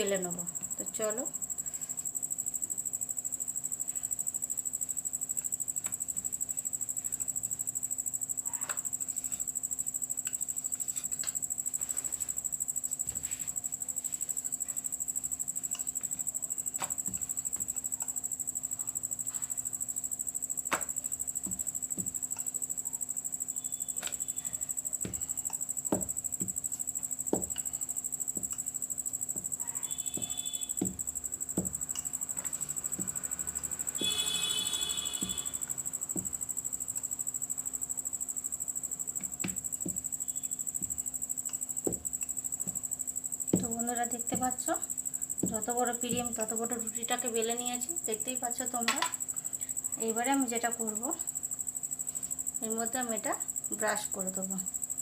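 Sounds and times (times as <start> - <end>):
rolling pin rolling dough: 8.6 - 18.2, 20.5 - 22.8, 23.9 - 37.1, 39.1 - 46.8.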